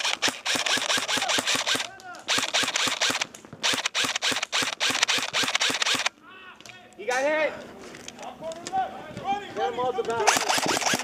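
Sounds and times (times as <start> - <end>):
airsoft guns firing full auto: 0.0 - 6.1, 10.2 - 11.0.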